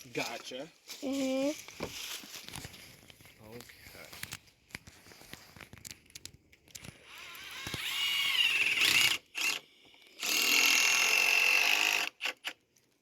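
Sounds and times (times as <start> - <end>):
power drill whining: 6.9 - 12.6.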